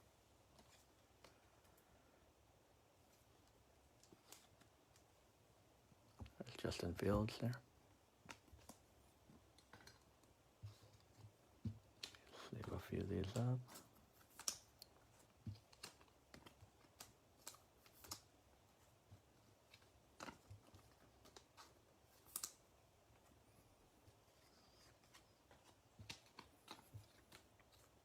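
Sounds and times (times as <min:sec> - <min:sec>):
faint sharp clicks and taps: 0:06.1 - 0:23.4, 0:24.0 - 0:28.0.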